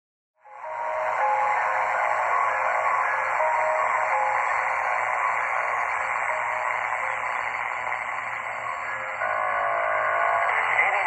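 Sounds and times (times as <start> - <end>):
radio static hiss: 3.5 - 11.0.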